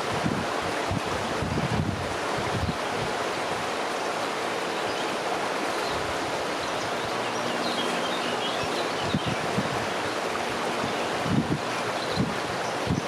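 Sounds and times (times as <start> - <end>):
wind buffeting microphone: 0.0 - 3.7, 8.6 - 13.0
river water rushing: 0.0 - 13.0.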